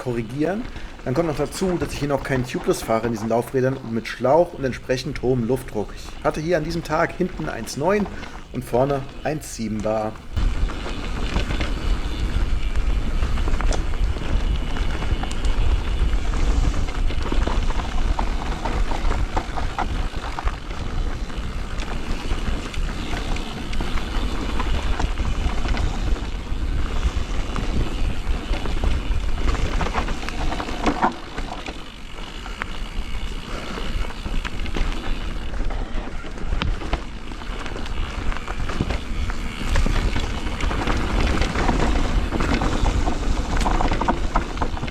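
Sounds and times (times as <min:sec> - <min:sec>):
tyres rolling and skidding: 0:00.0 - 0:44.9
wind rushing over microphone: 0:00.0 - 0:44.9
bike knocks and rattles: 0:10.4 - 0:44.9.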